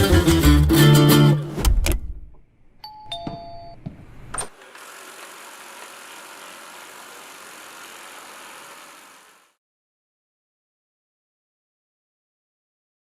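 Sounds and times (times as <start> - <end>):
music: 0.0 - 2.2.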